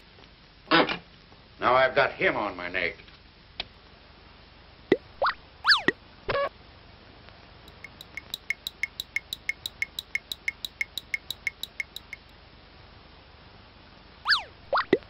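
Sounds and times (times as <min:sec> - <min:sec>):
light pitched ticks: 0:07.7 - 0:12.3
sharp knock with ring: 0:07.7 - 0:12.3.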